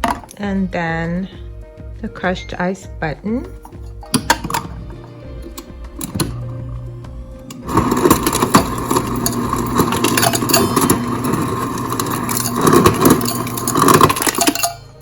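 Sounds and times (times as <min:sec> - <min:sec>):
ice dispenser motor grinding: 0:04.1 - 0:15.0
crushed ice rattling: 0:07.6 - 0:15.0.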